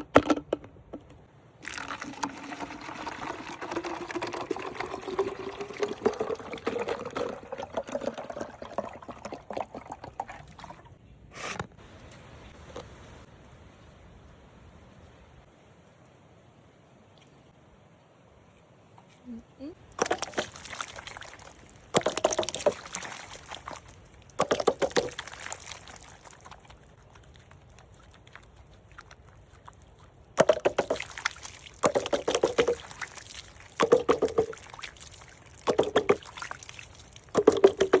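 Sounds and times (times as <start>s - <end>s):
liquid pouring and splashing: 1.6s - 10.9s, 19.8s - 38.0s.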